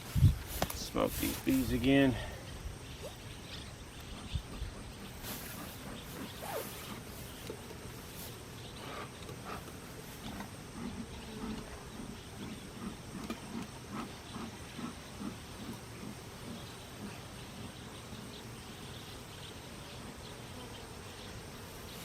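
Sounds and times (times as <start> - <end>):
wind on microphone: 0.0 - 1.4, 4.1 - 5.2
bee smoker puffing: 0.0 - 19.4.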